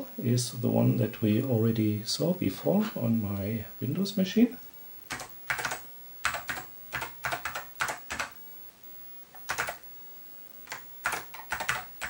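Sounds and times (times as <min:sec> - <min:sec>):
keyboard typing: 0:05.1 - 0:08.4, 0:09.3 - 0:09.8, 0:10.6 - 0:12.0.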